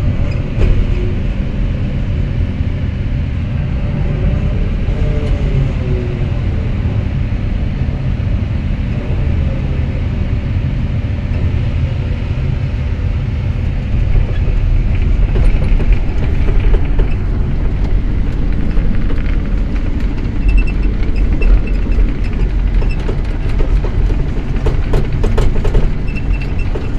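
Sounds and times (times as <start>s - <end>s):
excavator diesel engine rumbling: 0.0s - 26.9s
sharp knocks and clanks: 14.2s - 26.9s.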